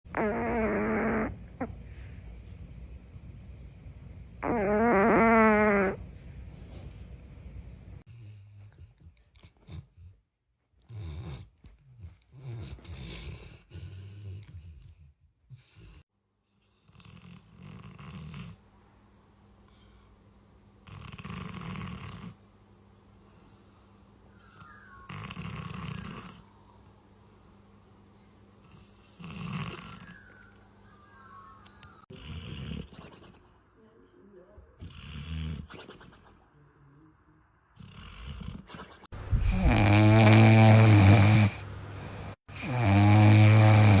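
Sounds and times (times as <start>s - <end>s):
dog snoring: 0.1s - 2.1s, 4.4s - 6.0s, 10.8s - 16.0s, 16.6s - 18.6s, 20.8s - 22.4s, 23.2s - 33.6s, 34.8s - 36.2s, 37.7s - 44.0s.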